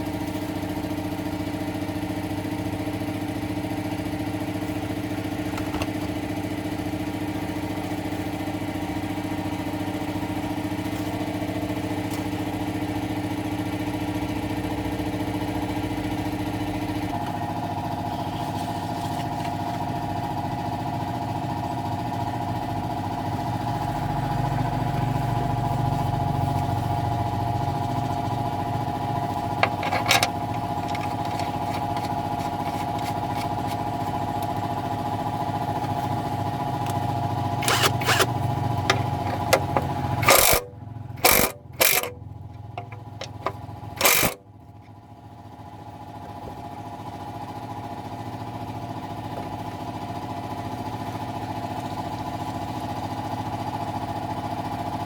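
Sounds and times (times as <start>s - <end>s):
engine humming: 23.1s - 45.0s
sharp clicks: 37.6s - 42.1s, 42.8s - 44.4s.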